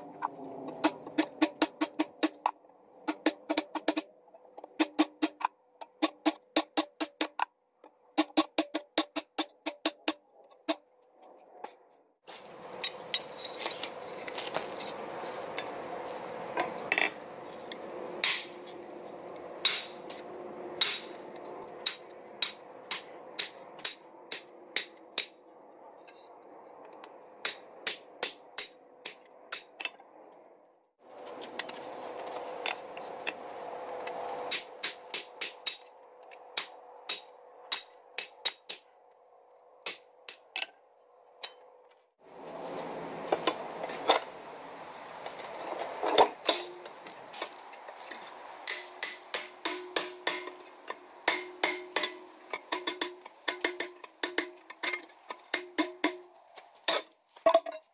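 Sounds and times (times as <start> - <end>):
hammer striking metal on anvil: 18.2 - 18.6, 19.6 - 20.1, 20.8 - 21.2, 21.8 - 25.4, 27.4 - 29.8, 34.5 - 35.9, 36.6 - 38.9, 39.8 - 40.6, 48.7 - 50.6, 51.2 - 56.2.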